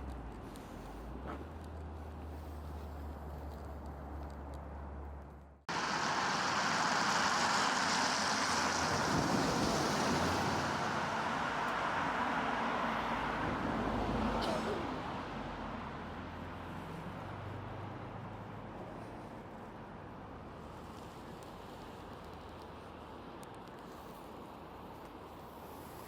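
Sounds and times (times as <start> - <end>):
road traffic rushing: 0.2 - 19.5.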